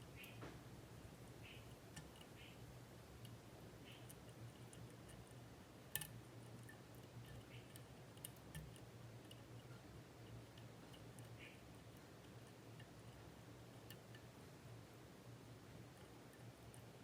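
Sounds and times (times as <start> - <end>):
lock pick clicking and scratching: 3.2 - 14.3.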